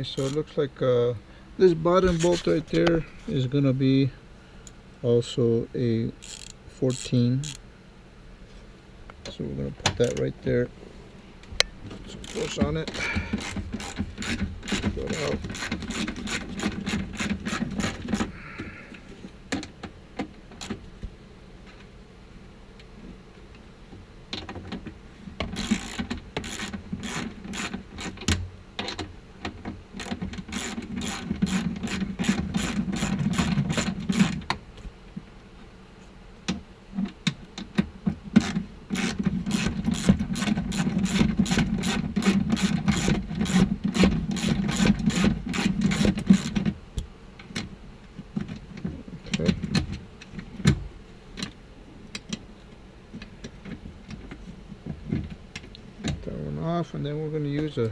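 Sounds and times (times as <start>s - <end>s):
ratchet wrench clicking: 6.2s - 7.6s, 12.2s - 18.2s, 25.6s - 28.2s, 30.0s - 34.4s.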